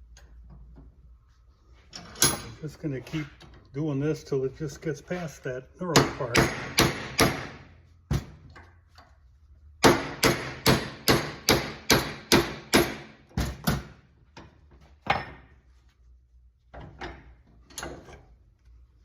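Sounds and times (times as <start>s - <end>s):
hammer striking metal punch: 5.9s - 8.4s, 9.8s - 13.9s.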